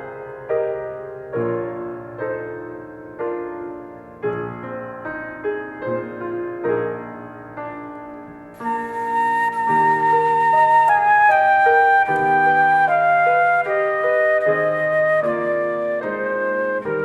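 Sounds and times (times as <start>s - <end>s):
solo piano carol medley: 0.0s - 17.0s.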